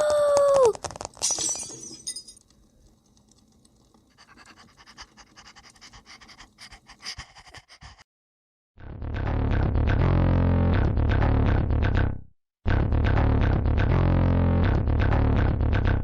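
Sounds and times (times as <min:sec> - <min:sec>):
dog panting: 0:03.9 - 0:08.1.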